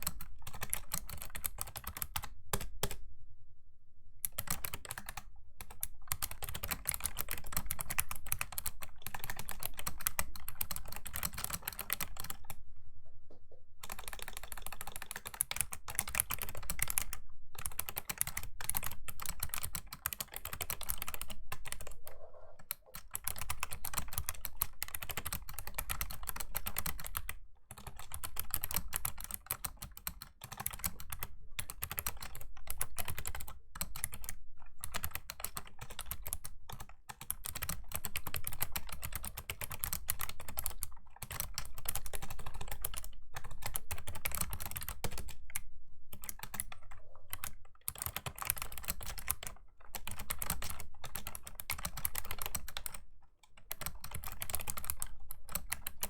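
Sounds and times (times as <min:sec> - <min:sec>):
fast keyboard typing clicks: 0:00.0 - 0:03.0, 0:04.3 - 0:12.6, 0:13.8 - 0:56.0.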